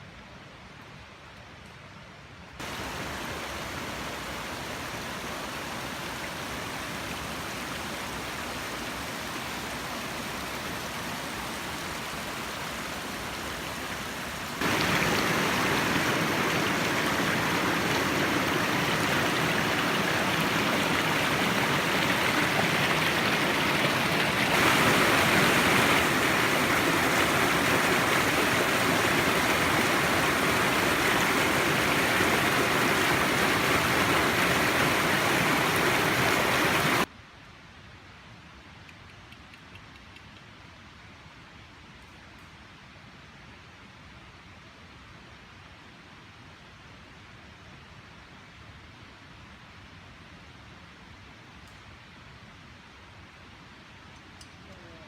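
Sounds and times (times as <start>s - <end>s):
river water rushing: 2.6s - 37.1s.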